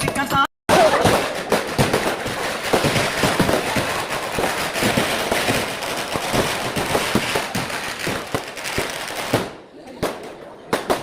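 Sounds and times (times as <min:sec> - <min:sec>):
firecrackers crackling: 0:00.0 - 0:11.0.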